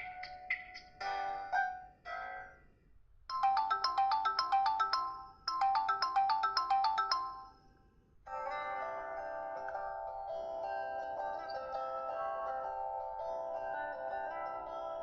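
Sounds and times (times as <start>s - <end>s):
ringtone with long held notes: 0.0s - 2.7s, 3.3s - 15.0s
bright fast ringtone melody: 3.3s - 7.7s.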